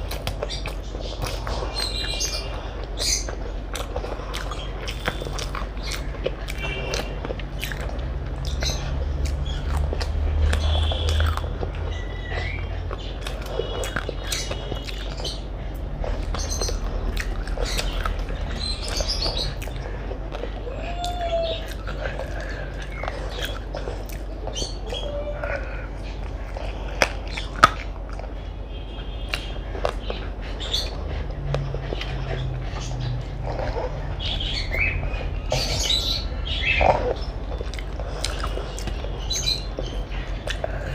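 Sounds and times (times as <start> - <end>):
eating sounds: 0.0 - 40.9
mouth and hand noises: 0.0 - 40.9
person chewing food: 0.0 - 40.9
steady low hum: 0.0 - 40.9
wet mouth clicks and smacks: 26.3 - 28.3.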